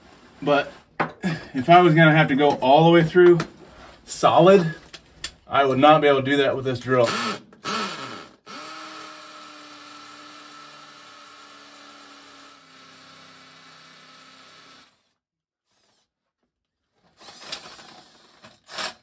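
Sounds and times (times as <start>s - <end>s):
hammer drill boring through concrete: 7.0s - 15.2s, 17.2s - 19.0s.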